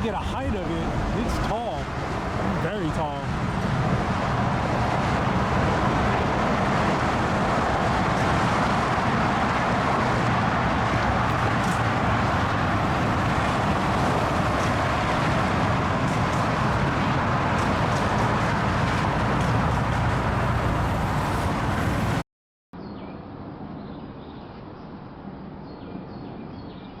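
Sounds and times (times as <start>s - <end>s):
dull background noise: 0.0s - 16.6s
road traffic drone: 0.0s - 22.2s.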